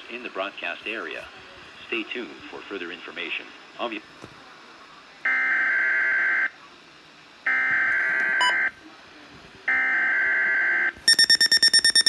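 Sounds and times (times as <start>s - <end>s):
two-tone data warble: 11.1s - 12.0s.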